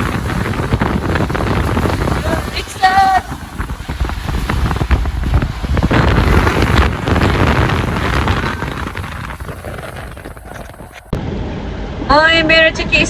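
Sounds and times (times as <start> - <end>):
wind buffeting microphone: 0.0 - 11.2
car rumble: 0.0 - 11.6.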